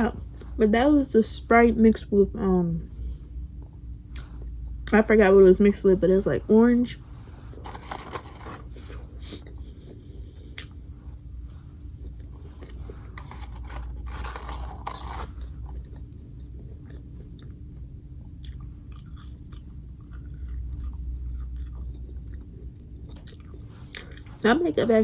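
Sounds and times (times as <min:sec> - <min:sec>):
steady low hum: 0:00.0 - 0:25.0
person chewing and crunching food: 0:07.2 - 0:24.5.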